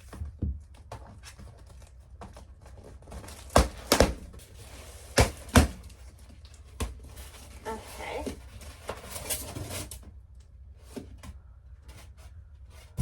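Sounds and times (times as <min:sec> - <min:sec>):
cardboard rustling: 0:00.0 - 0:10.1
sharp knocks and thuds: 0:03.2 - 0:04.4.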